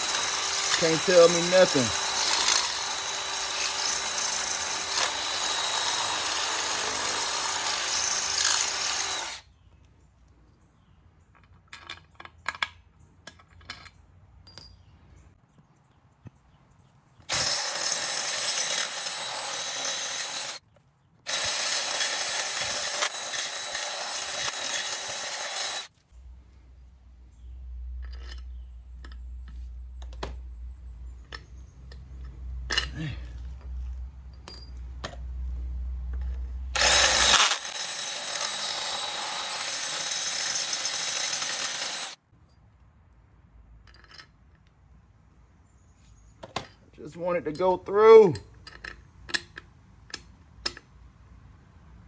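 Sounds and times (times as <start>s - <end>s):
power drill drilling: 0.0s - 9.4s, 17.3s - 20.6s, 21.3s - 25.9s, 36.8s - 42.2s.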